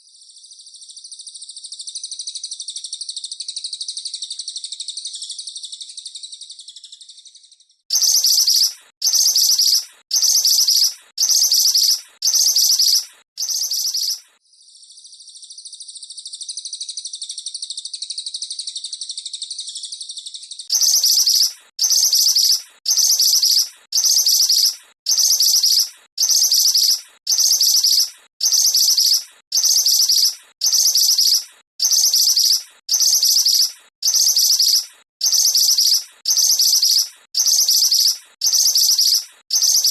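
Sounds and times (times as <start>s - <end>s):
songbird rapid chattering call: 7.9s - 14.4s, 20.0s - 39.9s
buzzy bird trill: 7.9s - 18.0s, 18.7s - 39.9s.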